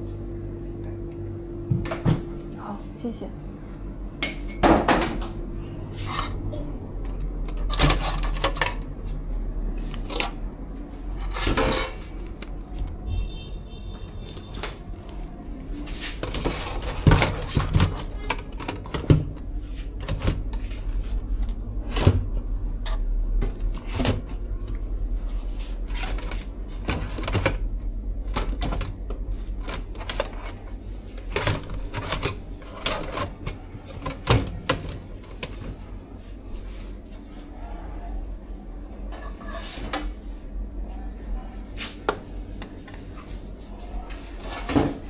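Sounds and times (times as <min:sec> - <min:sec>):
steady low hum: 0:00.0 - 0:45.0
containers clicking and clattering: 0:06.2 - 0:08.9, 0:16.2 - 0:20.6, 0:25.9 - 0:35.8.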